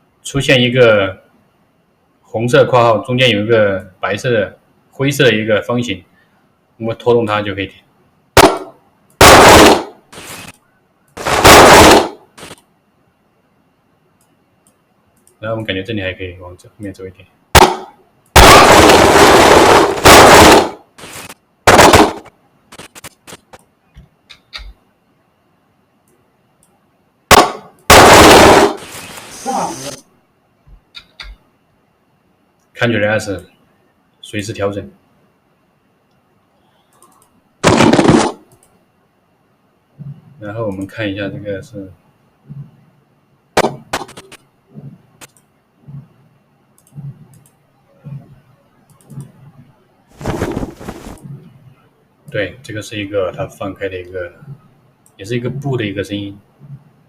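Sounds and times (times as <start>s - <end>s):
computer mouse clicking: 14.2s - 15.4s, 36.8s - 37.3s, 44.1s - 46.0s, 46.8s - 49.4s
short clicks: 36.8s - 37.4s.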